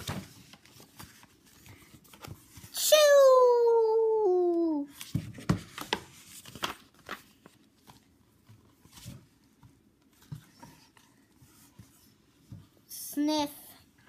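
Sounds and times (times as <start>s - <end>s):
paper rustles: 0.0s - 2.8s, 4.9s - 12.2s.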